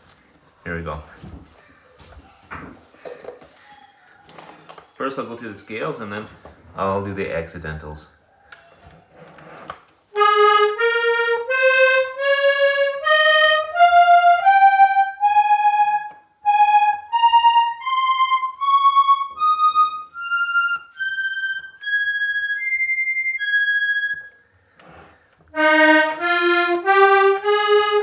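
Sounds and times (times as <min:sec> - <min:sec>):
accordion playing a scale: 0:10.1 - 0:24.5, 0:25.5 - 0:28.0.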